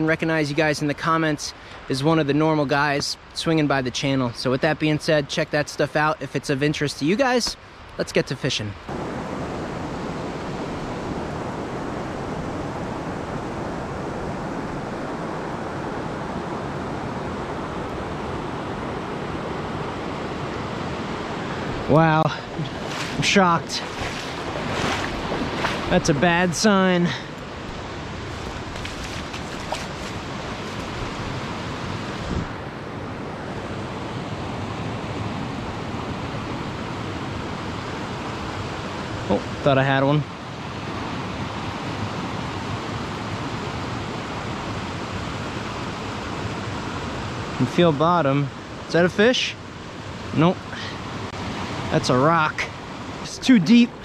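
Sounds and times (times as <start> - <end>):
stream rushing: 0.0 - 54.0
stream rushing over rocks: 20.8 - 32.5.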